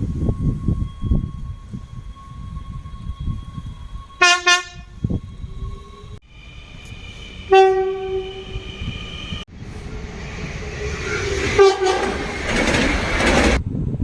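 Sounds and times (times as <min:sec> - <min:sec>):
passing train rushing: 0:00.0 - 0:14.0
train horn chord: 0:04.2 - 0:05.1, 0:07.1 - 0:08.6, 0:11.6 - 0:12.2.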